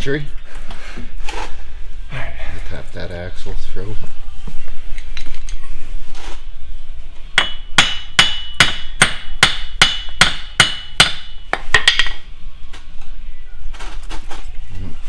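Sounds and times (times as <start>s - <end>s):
hammer striking metal: 7.4s - 12.2s.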